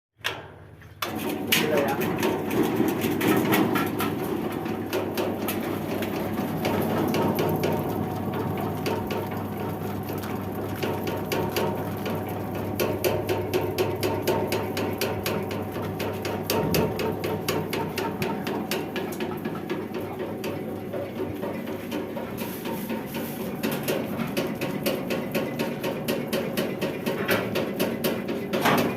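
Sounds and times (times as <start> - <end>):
motor hum: 0.8 - 28.9
sieve rattling: 1.1 - 13.4.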